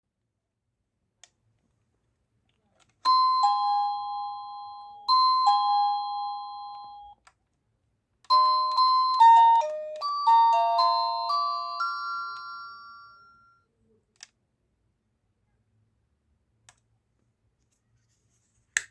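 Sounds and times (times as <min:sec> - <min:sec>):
doorbell ding-dong chime: 0:03.1 - 0:07.2, 0:08.3 - 0:13.6
doorbell multi-note melody: 0:03.1 - 0:07.2, 0:08.3 - 0:13.6.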